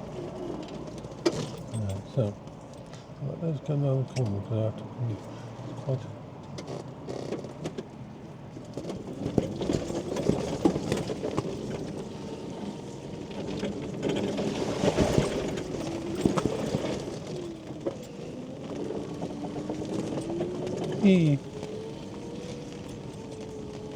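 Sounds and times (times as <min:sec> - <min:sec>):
scooter motor whine: 0:08.9 - 0:23.9.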